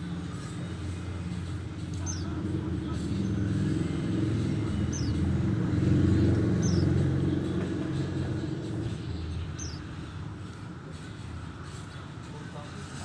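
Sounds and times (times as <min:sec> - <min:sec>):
passing vehicle rumble: 0:00.0 - 0:13.0
bird chirping: 0:01.9 - 0:07.4, 0:09.4 - 0:10.0.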